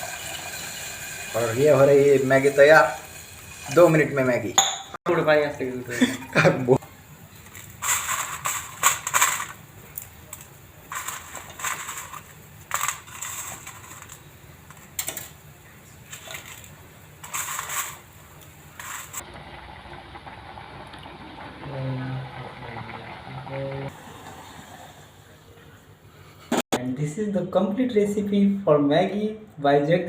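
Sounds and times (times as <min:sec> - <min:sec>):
metal spoon scraping a pan: 0:10.9 - 0:14.2, 0:16.1 - 0:18.0, 0:18.8 - 0:19.2.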